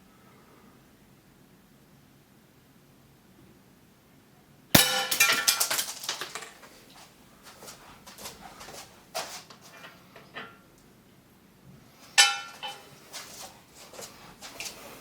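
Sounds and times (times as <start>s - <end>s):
pellet hitting clay pipe: 4.8s - 6.4s.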